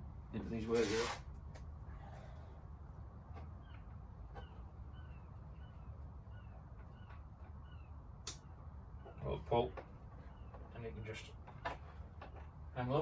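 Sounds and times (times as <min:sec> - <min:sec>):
bird chirping faintly: 0:03.4 - 0:12.0.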